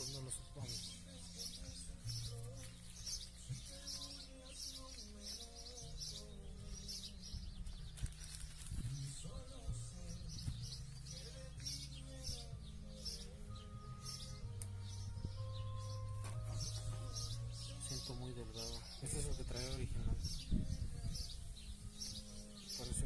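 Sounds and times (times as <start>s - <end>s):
birds chirping: 0.0s - 23.0s
music playing: 0.0s - 23.0s.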